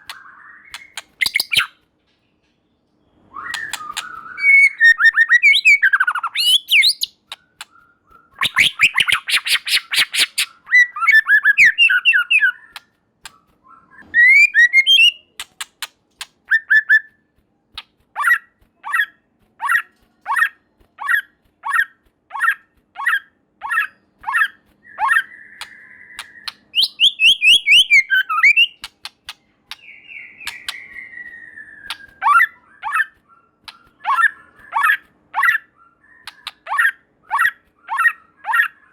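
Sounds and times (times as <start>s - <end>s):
bird harsh raspy chatter: 0.0s - 1.7s, 8.3s - 12.8s, 31.9s - 38.9s
bird singing whistled song: 0.0s - 1.8s, 3.0s - 15.5s, 16.5s - 17.2s, 19.6s - 28.9s, 29.7s - 38.9s.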